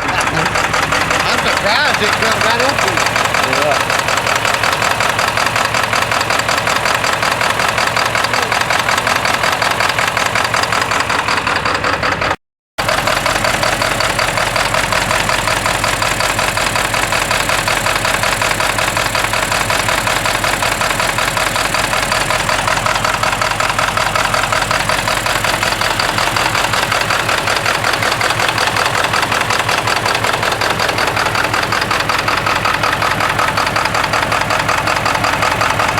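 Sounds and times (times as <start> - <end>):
diesel engine idling with clatter: 0.0 - 35.9.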